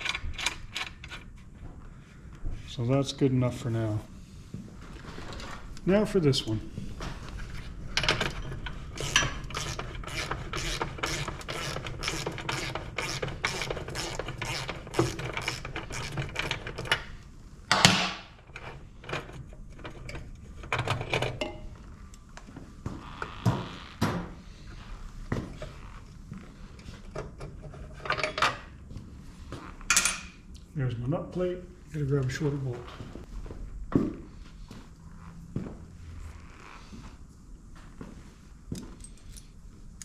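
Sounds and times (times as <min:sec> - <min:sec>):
socket ratchet clicking: 0:09.0 - 0:16.6.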